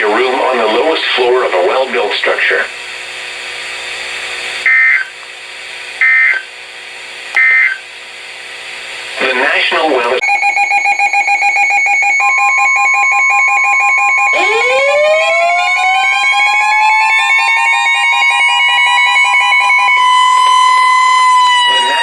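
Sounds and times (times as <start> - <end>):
rapidly pulsing electronic beep: 4.7 - 5.1, 7.4 - 7.8, 10.2 - 22.0
siren winding up: 6.0 - 6.5, 7.4 - 7.8, 10.2 - 22.0.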